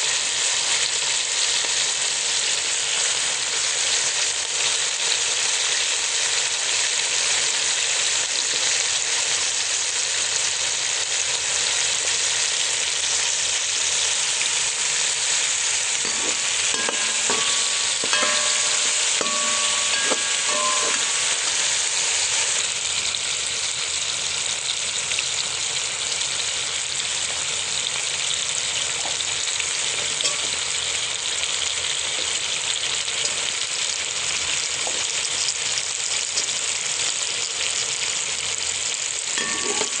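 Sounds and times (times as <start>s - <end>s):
food sizzling in oil: 0.0s - 40.0s
utensil scraping and knocking pan: 16.0s - 22.0s, 39.4s - 40.0s.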